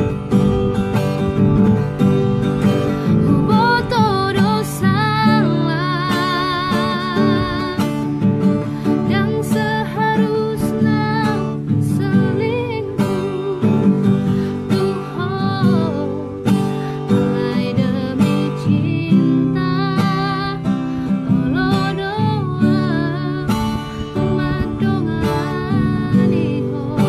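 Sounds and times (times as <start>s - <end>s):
strummed acoustic guitar: 0.0s - 27.0s
woman singing with vibrato: 2.6s - 27.0s.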